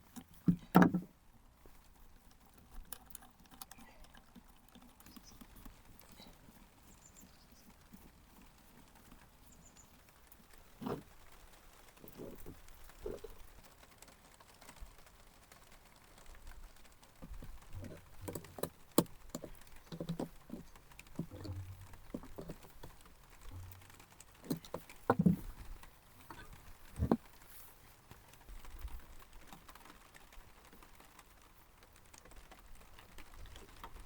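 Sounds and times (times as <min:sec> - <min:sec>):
objects being handled: 0:00.0 - 0:11.3, 0:12.0 - 0:13.4, 0:17.2 - 0:28.0.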